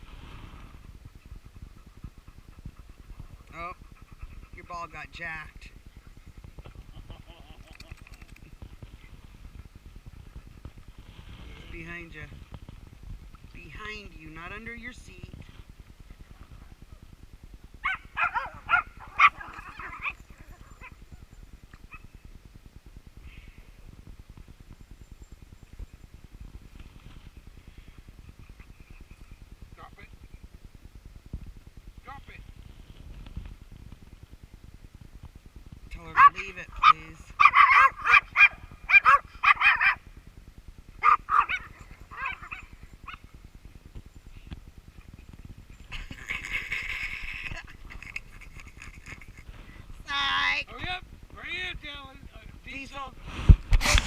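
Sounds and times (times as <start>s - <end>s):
low steady rumble: 0.0s - 54.0s
small dog yapping: 17.8s - 21.0s, 36.2s - 40.0s, 41.0s - 43.2s.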